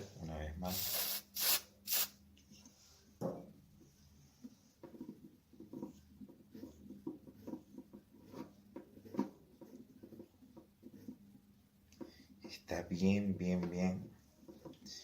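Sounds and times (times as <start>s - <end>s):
fan shaft scraping and clicking: 4.4s - 11.3s, 11.9s - 15.0s.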